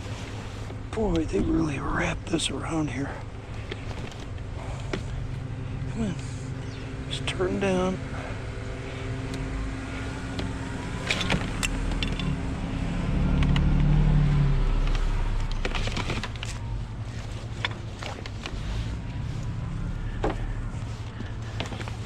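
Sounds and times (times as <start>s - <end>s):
steady low hum: 0.0s - 22.0s
vehicle passing by: 4.3s - 17.6s, 18.5s - 22.0s
metal clicks and clinks: 11.0s - 12.4s.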